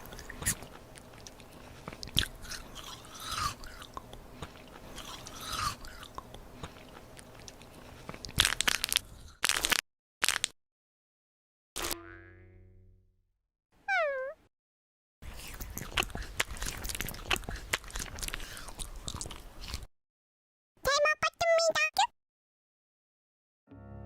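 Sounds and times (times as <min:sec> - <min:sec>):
crunchy food chewing: 0:00.0 - 0:10.5, 0:15.2 - 0:19.9.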